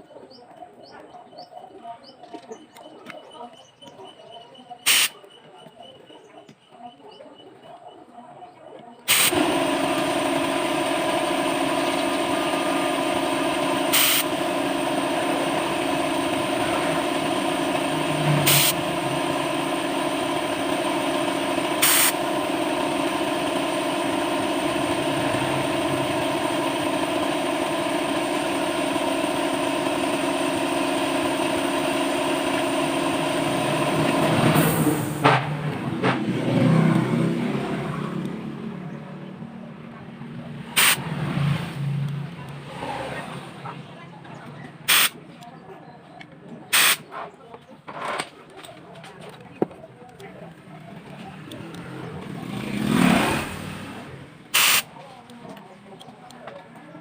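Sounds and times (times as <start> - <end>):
machine running loudly: 9.1 - 45.2, 50.4 - 54.9.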